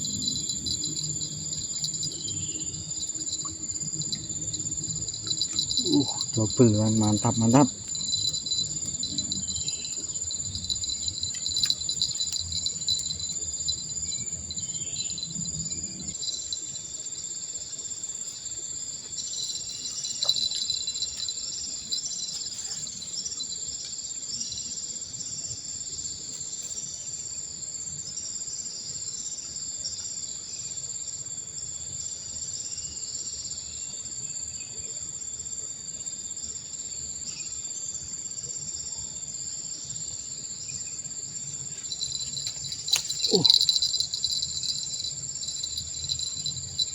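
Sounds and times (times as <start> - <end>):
shrill insect chorus: 0.0 - 46.9.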